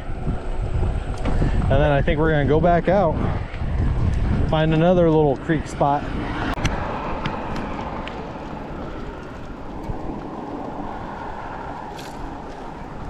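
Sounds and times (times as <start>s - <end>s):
wind over microphone: 0.0s - 13.0s
tyres rolling on pavement: 4.6s - 13.0s.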